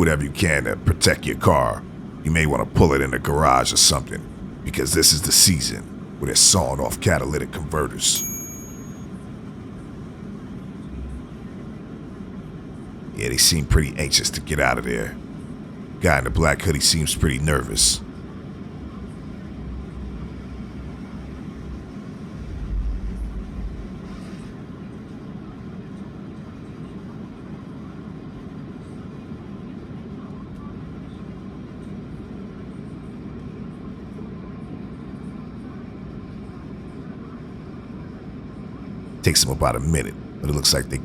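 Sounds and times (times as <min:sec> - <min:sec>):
louder low rumble: 0:22.4 - 0:24.0.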